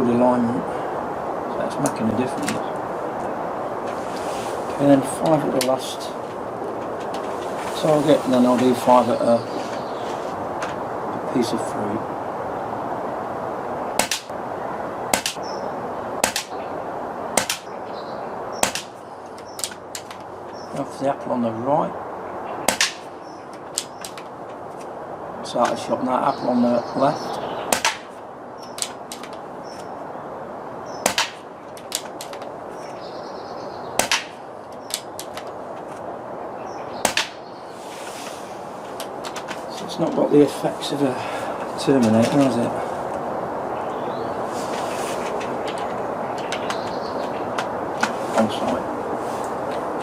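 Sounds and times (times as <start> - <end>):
air rifle shots: 14.0 - 14.3, 15.1 - 15.4, 16.2 - 16.6, 17.3 - 17.7, 18.6 - 19.0, 22.6 - 23.1, 27.7 - 28.2, 31.0 - 32.2, 34.0 - 34.4, 37.0 - 37.4
pellet striking target: 22.7 - 23.0.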